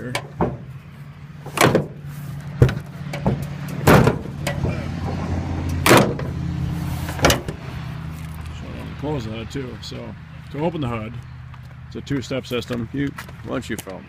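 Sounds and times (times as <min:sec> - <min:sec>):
metal hood latch clanking: 0:00.0 - 0:00.7, 0:01.5 - 0:02.0, 0:02.6 - 0:06.4, 0:07.2 - 0:07.6.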